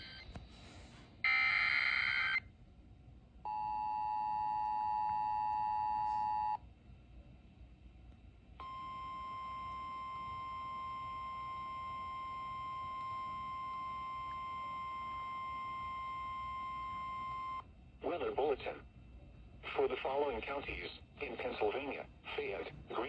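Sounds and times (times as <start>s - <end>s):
steady warning tone: 8.6s - 17.7s.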